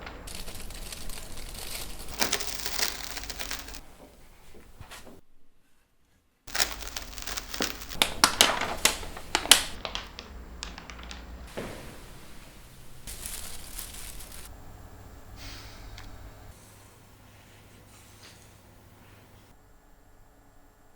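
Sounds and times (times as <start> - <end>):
paper crumpling and tearing: 0.2 - 3.8, 6.5 - 11.6, 13.0 - 14.5.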